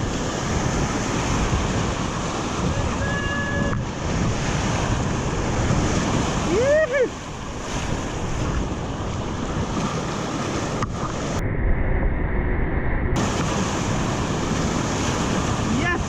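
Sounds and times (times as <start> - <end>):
wind buffeting microphone: 0.0 - 12.1, 13.2 - 16.0
rushing whitewater rapids: 13.2 - 16.0.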